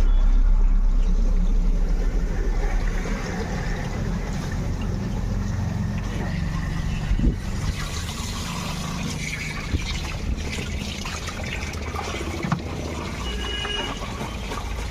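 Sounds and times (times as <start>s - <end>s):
low steady hum: 0.0s - 8.3s
water trickling and splashing: 0.4s - 14.9s.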